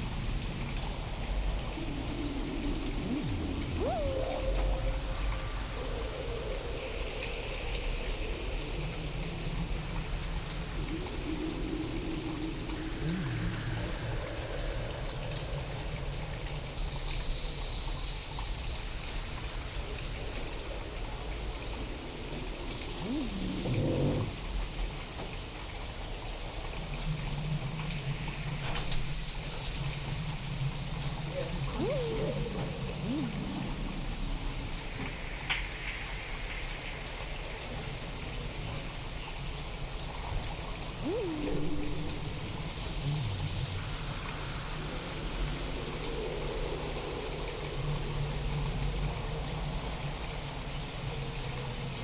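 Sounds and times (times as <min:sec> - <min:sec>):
rain falling: 0:00.0 - 0:16.6, 0:30.4 - 0:35.4
steady rain: 0:00.0 - 0:52.0
rising and falling glide: 0:01.6 - 0:06.2, 0:23.0 - 0:24.5, 0:31.3 - 0:34.8, 0:41.0 - 0:43.6
faint high steady tone: 0:01.7 - 0:06.4, 0:31.3 - 0:34.4.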